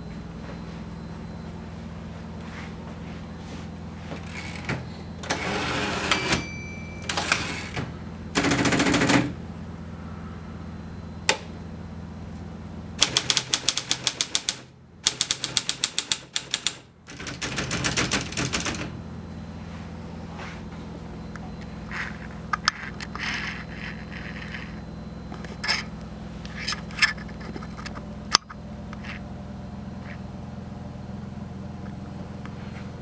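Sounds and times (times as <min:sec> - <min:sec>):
typewriter scraping: 0:04.2 - 0:06.4, 0:07.1 - 0:09.4, 0:13.0 - 0:18.9, 0:21.9 - 0:25.9, 0:26.5 - 0:28.0
typewriter click: 0:07.1 - 0:09.4, 0:13.0 - 0:18.9
fast typing on typewriter: 0:08.4 - 0:09.4, 0:13.0 - 0:18.9.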